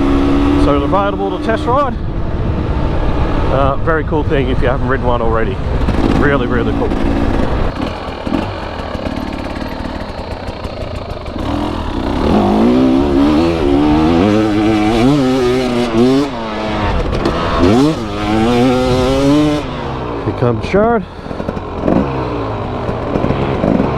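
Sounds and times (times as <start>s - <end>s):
dirt bike engine revving: 0.0s - 23.9s.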